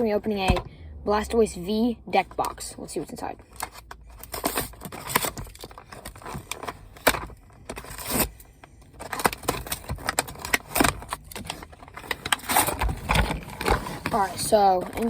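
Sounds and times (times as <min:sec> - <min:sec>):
cardboard clicks scrapes and rustles: 0:03.4 - 0:15.0.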